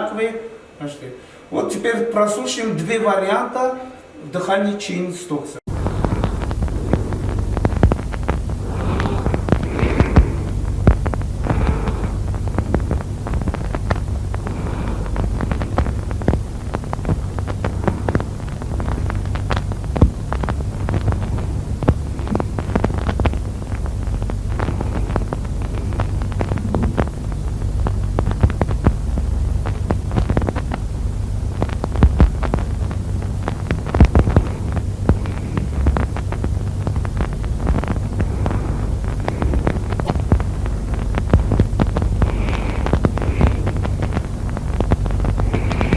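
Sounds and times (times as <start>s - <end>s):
breathing through a stethoscope: 1.2s - 1.5s, 5.7s - 28.4s, 34.2s - 36.5s, 37.2s - 45.9s
low hum: 5.7s - 45.9s.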